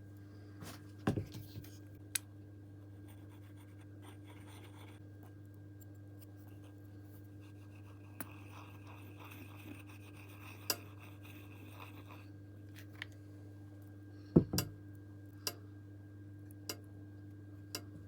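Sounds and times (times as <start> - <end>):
low electrical hum: 0.0 - 18.0
faint rubbing and scratching: 6.5 - 12.3.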